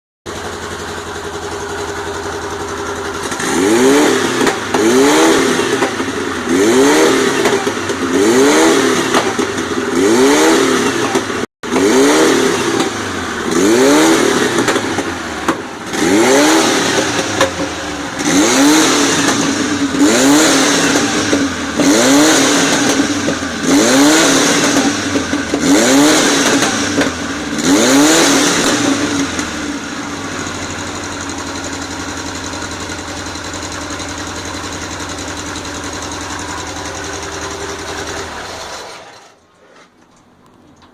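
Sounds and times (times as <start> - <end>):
engine idling and revving: 0.3 - 40.9.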